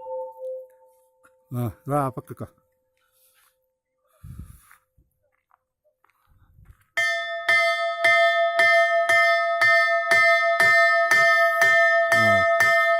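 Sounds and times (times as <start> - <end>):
temple bell ringing: 0.0 - 1.0, 7.0 - 12.9.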